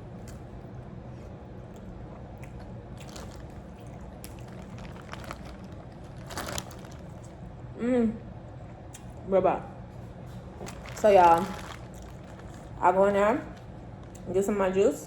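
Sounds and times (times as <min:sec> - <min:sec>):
wet chewing and smacking: 0:00.0 - 0:07.5, 0:10.0 - 0:12.8
steady low hum: 0:00.0 - 0:15.0.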